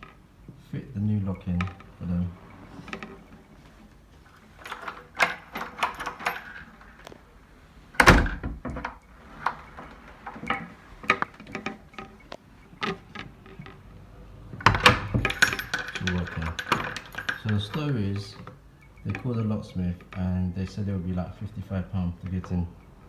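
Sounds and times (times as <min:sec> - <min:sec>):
latch and key clicks: 0:01.6 - 0:07.3, 0:07.9 - 0:13.8, 0:14.6 - 0:18.6
door thud: 0:08.0 - 0:10.6, 0:14.6 - 0:15.7.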